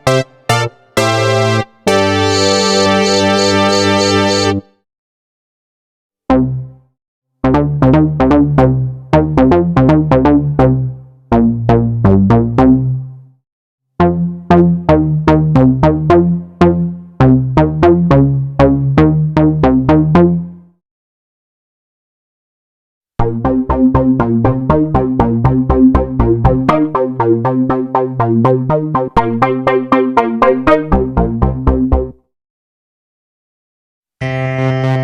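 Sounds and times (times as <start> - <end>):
held synth chord: 0.0 - 4.6, 34.2 - 35.0
plucked synth notes: 0.0 - 4.6, 14.0 - 20.3, 23.2 - 32.2
deep synth bass: 0.0 - 4.7, 7.4 - 13.1, 14.0 - 20.6, 23.2 - 32.2.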